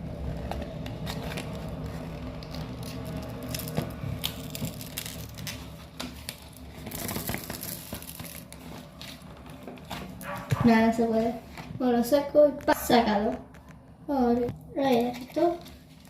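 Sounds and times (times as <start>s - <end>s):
plastic packaging crinkling: 0.3s - 10.5s, 14.9s - 16.0s.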